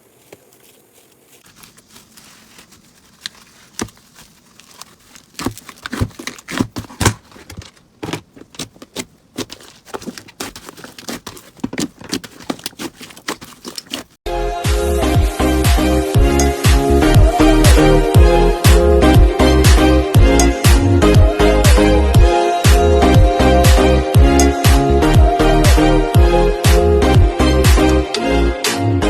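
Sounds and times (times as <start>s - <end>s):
slime crackling and popping: 1.4s - 7.1s, 8.5s - 14.2s.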